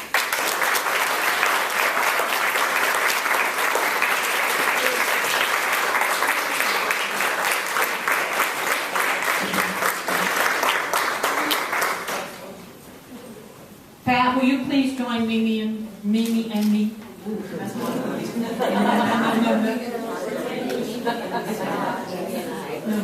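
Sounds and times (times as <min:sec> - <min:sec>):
audience applauding: 0:00.0 - 0:12.6.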